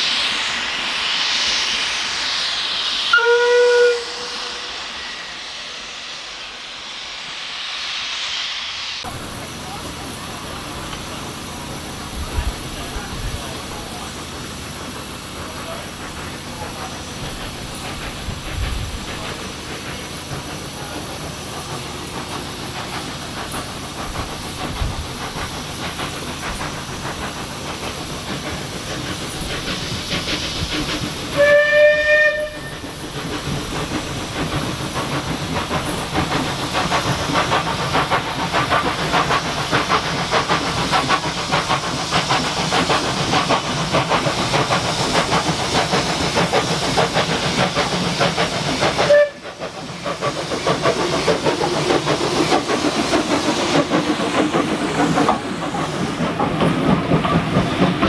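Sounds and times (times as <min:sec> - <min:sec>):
steam locomotive hissing: 0:00.0 - 0:58.0
steam whistle blast: 0:03.0 - 0:05.8, 0:31.3 - 0:33.0, 0:49.0 - 0:49.6.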